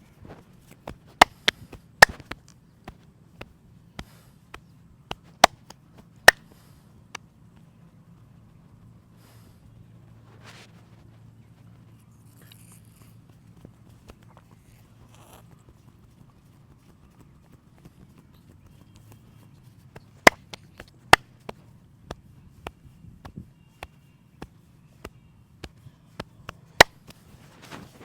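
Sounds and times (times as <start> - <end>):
low steady hum: 0.0 - 28.0
hands snapping and tapping: 0.6 - 7.7, 13.3 - 28.0
loud cracks: 2.0 - 2.4.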